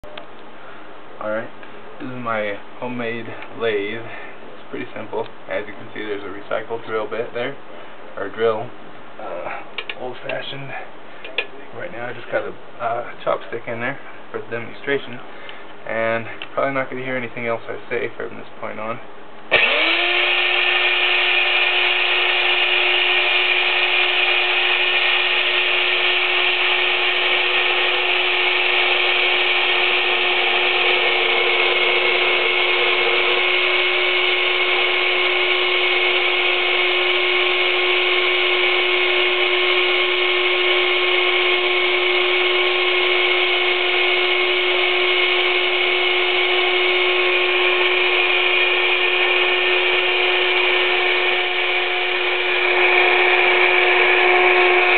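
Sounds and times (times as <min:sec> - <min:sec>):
electric drill motor whining: 0:19.5 - 0:54.9.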